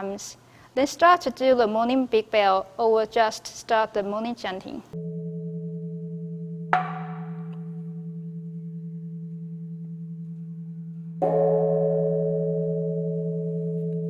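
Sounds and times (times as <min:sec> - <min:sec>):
temple bell humming and ringing: 0:05.0 - 0:14.0.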